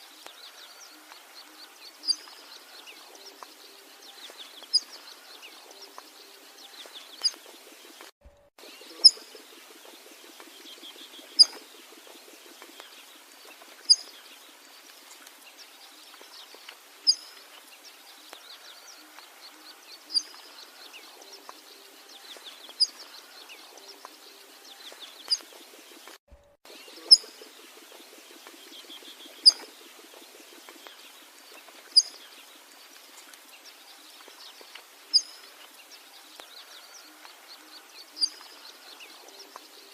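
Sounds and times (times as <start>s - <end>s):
faint bird calls: 0.0s - 39.9s
bird sharp high chirp: 8.3s - 9.5s, 10.3s - 11.8s, 17.1s - 17.4s, 26.8s - 27.4s, 28.7s - 29.7s, 31.9s - 32.2s.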